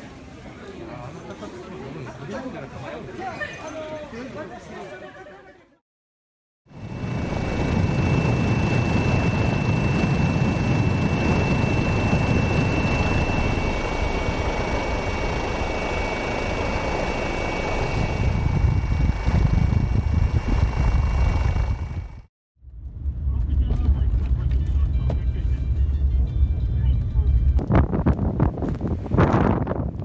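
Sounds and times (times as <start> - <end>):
aircraft engine running: 6.7 - 30.0
thin high whine: 6.8 - 22.3.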